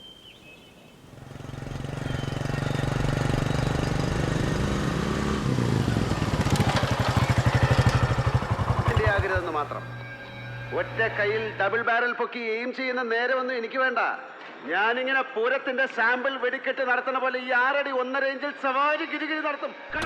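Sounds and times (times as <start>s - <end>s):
motorcycle engine running: 1.1s - 10.7s.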